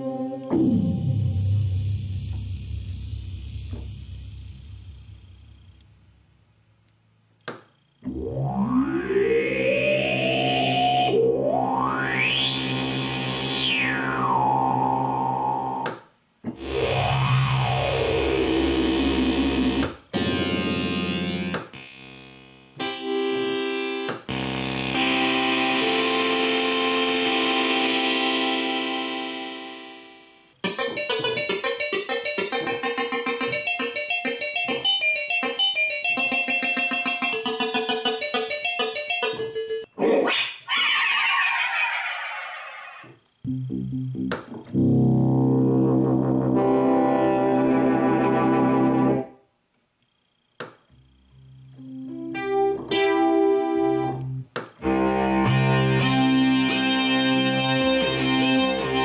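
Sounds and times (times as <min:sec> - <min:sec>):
synthesizer chord: 0:00.0 - 0:05.8, 0:08.1 - 0:15.9, 0:22.8 - 0:39.9, 0:43.5 - 0:49.4, 0:51.6 - 0:59.0.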